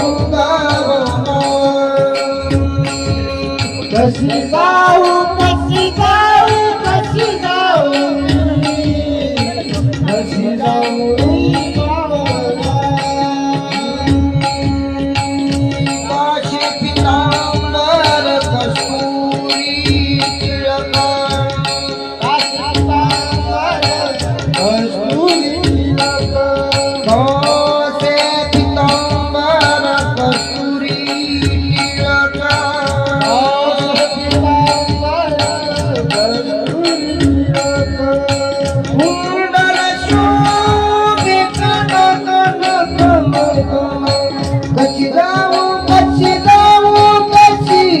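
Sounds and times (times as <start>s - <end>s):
hand drum beat: 0.0s - 48.0s.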